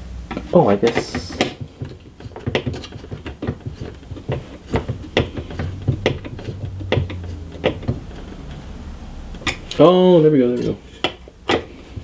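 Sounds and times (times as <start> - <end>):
sharp clicks and knocks: 0.3 - 8.7, 10.5 - 12.0
low hum: 4.6 - 11.5.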